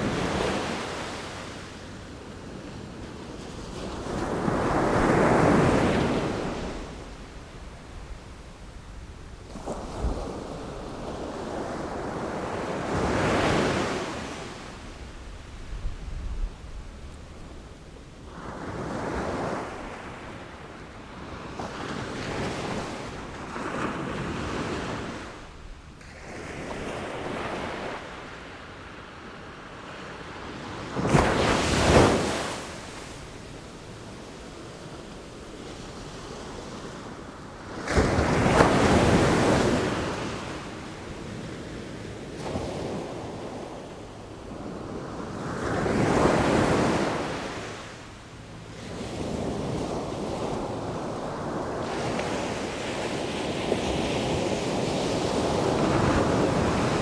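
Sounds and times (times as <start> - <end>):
sea waves breaking: 31.0 - 57.0.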